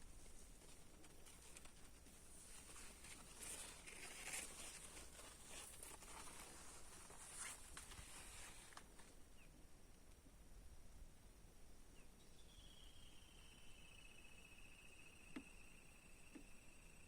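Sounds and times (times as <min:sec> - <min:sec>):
faint chirp: 0:11.9 - 0:17.0.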